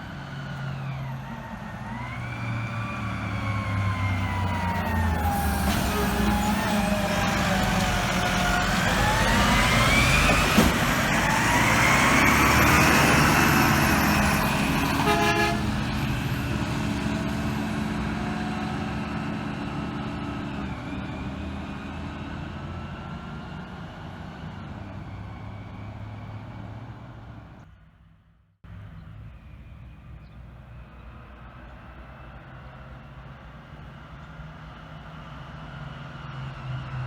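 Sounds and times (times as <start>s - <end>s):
truck brakes squealing: 0.0s - 19.5s
diesel engine rumble: 0.0s - 27.9s
short horn toot: 14.8s - 16.0s.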